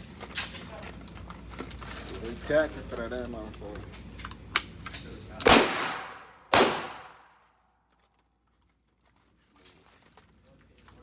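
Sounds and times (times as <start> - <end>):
loud gunshots with echo: 5.5 - 7.2.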